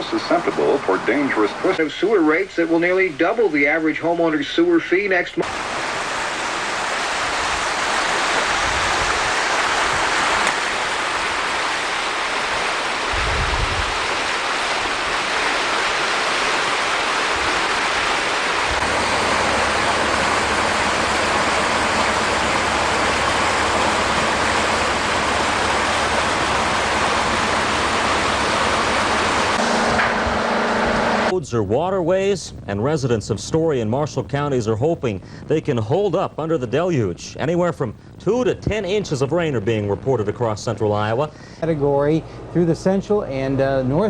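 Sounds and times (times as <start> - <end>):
floodwater rushing: 0.0 - 31.3
low steady hum: 0.0 - 44.0.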